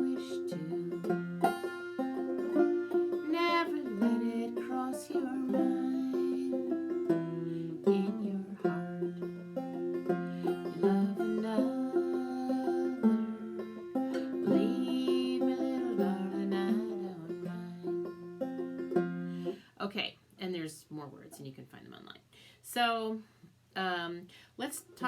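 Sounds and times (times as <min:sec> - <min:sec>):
banjo playing a fiddle tune: 0:00.0 - 0:19.7.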